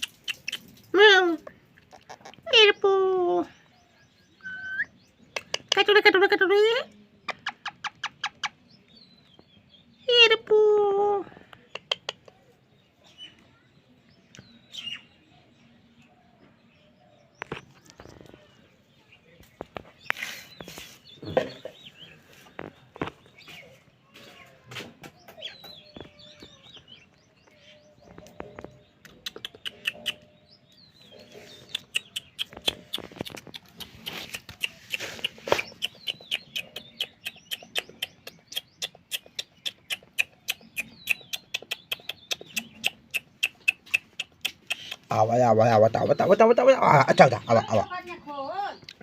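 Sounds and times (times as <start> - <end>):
parrot chirping and calling: 0.0 - 1.2, 4.3 - 8.7, 29.1 - 48.1
fast sharp ticking clicks: 31.7 - 45.2.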